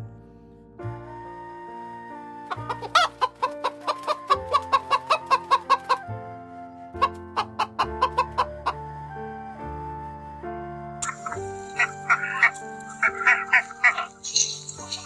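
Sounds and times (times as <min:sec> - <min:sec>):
background music with held notes: 0:00.0 - 0:15.0
chicken clucking: 0:02.5 - 0:06.0, 0:11.0 - 0:15.0.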